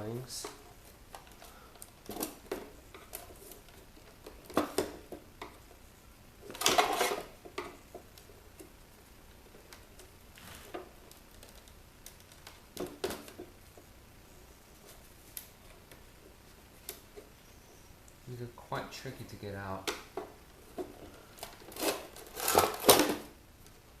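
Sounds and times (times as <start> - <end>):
scraping rustle: 6.5 - 7.4, 9.9 - 12.5, 20.8 - 23.3.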